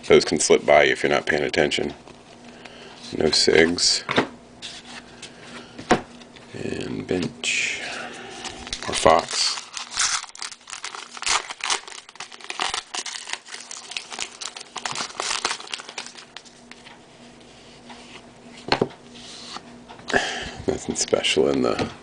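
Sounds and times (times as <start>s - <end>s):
cards and packaging rustling: 8.4s - 17.0s.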